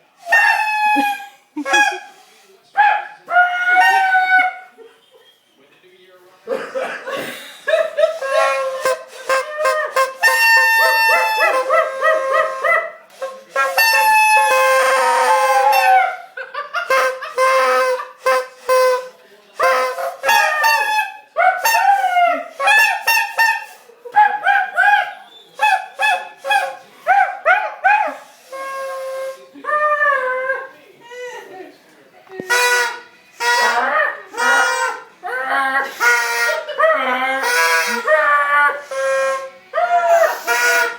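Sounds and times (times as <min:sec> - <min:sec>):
overlapping horns honking: 0:08.0 - 0:16.0, 0:16.6 - 0:21.8, 0:32.4 - 0:35.2, 0:35.8 - 0:36.8, 0:37.4 - 0:40.9.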